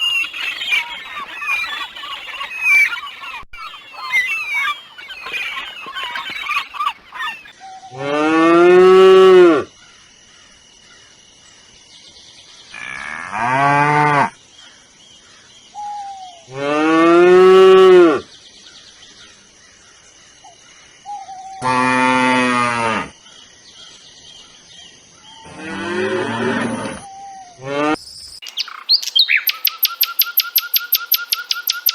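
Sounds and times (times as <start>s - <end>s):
bird calls: 0.0s - 8.0s, 14.6s - 16.5s, 18.3s - 21.7s, 23.3s - 25.8s, 26.4s - 31.9s
cow mooing: 25.5s - 27.0s.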